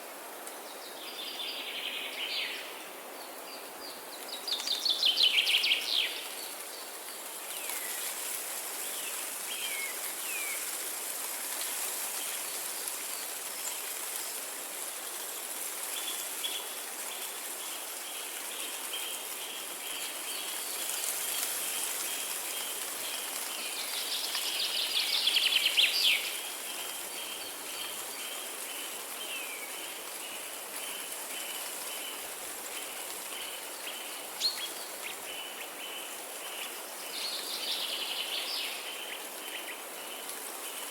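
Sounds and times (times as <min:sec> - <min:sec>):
rain: 0:00.0 - 0:40.9
songbirds singing: 0:16.0 - 0:40.9.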